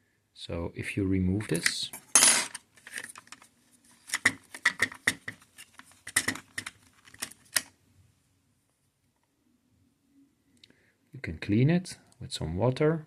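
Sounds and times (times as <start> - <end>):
plastic parts clicking and tapping: 1.5 - 7.7.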